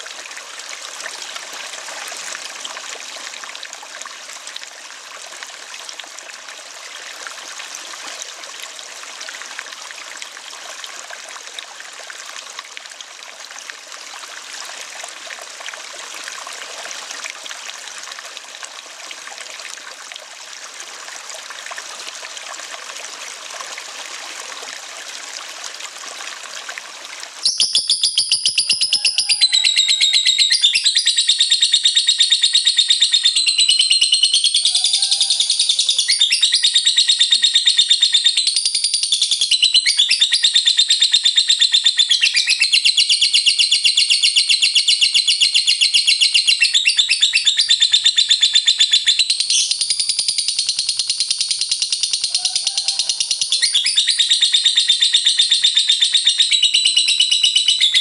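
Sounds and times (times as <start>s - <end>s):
lovebird chattering trill: 27.5s - 58.0s.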